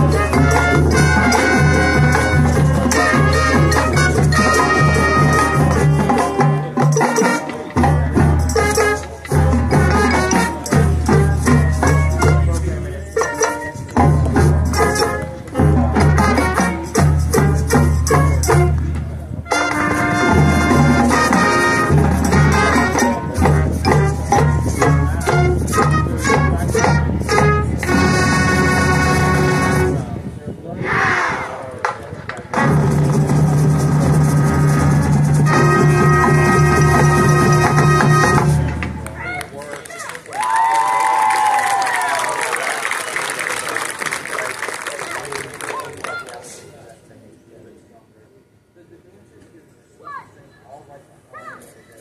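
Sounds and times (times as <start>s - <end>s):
steady drum beat: 0.0s - 13.0s, 13.9s - 18.9s, 19.7s - 30.0s, 32.6s - 39.1s
marching band playing: 0.0s - 30.2s, 30.8s - 40.1s.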